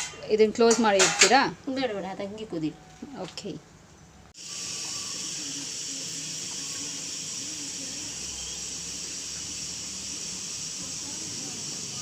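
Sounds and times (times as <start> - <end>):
pot boiling with hiss: 4.3 - 12.0.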